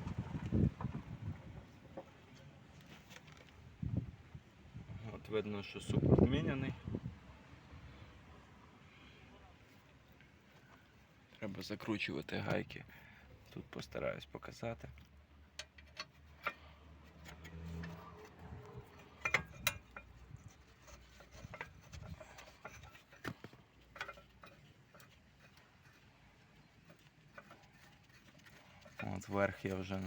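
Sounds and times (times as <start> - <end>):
metallic clicks of bolts: 15.5 - 20.2.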